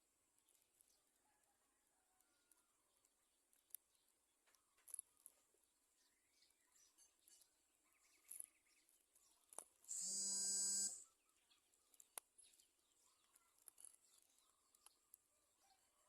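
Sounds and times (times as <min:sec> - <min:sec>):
steady buzz: 0:09.9 - 0:11.0.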